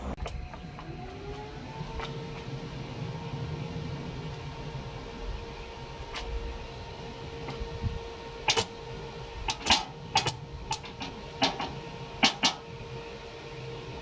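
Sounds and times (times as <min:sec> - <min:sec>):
steady electrical hum: 0:00.0 - 0:14.0
sharp clicks and knocks: 0:09.5 - 0:12.6.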